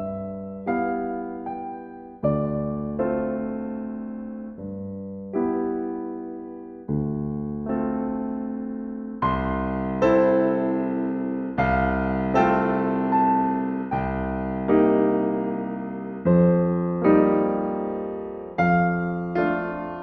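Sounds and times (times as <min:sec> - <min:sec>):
slow gentle piano chords: 0:00.0 - 0:20.0.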